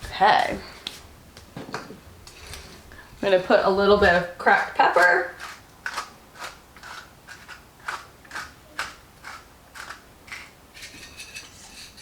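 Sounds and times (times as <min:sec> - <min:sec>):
pepper grinder rasping: 0:05.0 - 0:11.5.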